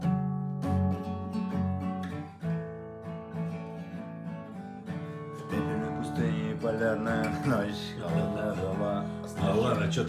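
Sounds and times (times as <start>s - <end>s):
acoustic guitar strumming: 0.0s - 10.0s.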